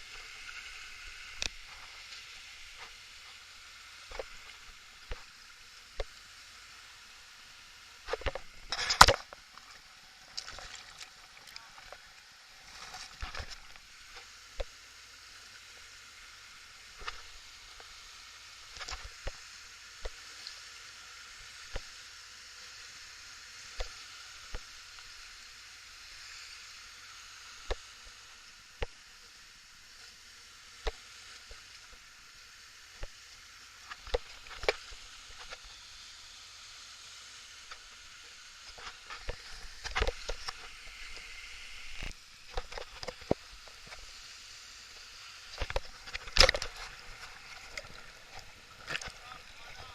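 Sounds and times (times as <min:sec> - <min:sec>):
rushing river water: 0:00.0 - 0:14.0, 0:37.7 - 0:49.9
sharp clicks or splashes: 0:08.1 - 0:09.4, 0:10.3 - 0:12.0, 0:45.5 - 0:49.9.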